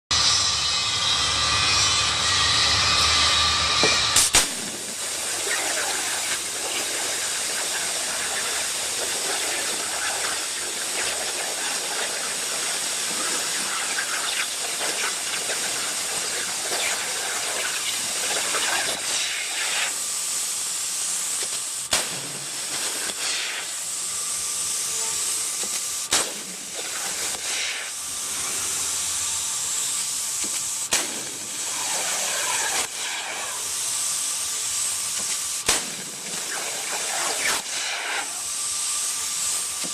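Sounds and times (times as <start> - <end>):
plasma torch hissing: 0.1 - 39.9
sharp cracks: 4.1 - 5.0, 21.4 - 23.3, 25.6 - 27.6, 30.5 - 33.4, 35.2 - 38.3.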